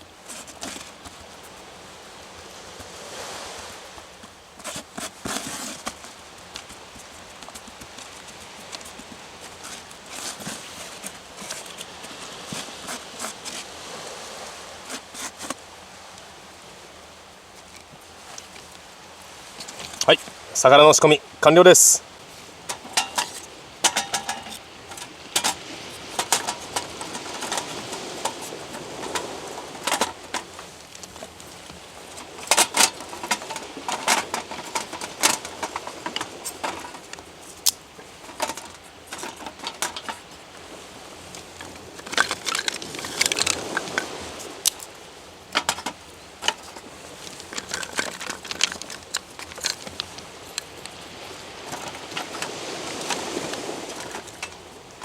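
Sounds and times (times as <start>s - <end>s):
hard objects clicking and clinking: 22.7s - 30.7s, 41.6s - 44.1s, 45.6s - 50.9s.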